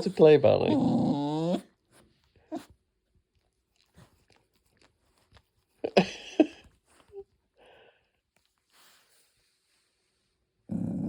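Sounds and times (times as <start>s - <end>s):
dog mouth and nose noises: 2.6s - 6.0s.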